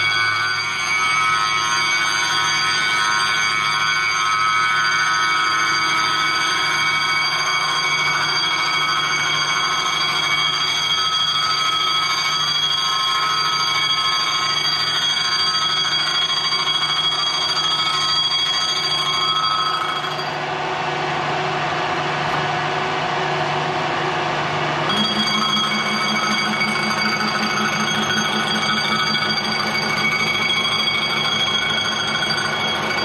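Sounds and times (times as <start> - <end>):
machine tool whining: 24.9 - 33.0.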